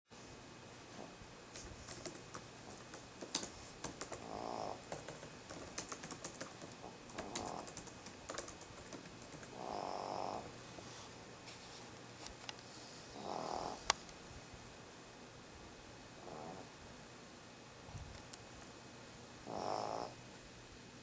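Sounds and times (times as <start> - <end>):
dog snoring: 4.2 - 4.8, 9.5 - 10.5, 13.1 - 13.8, 16.2 - 16.7, 19.4 - 20.2.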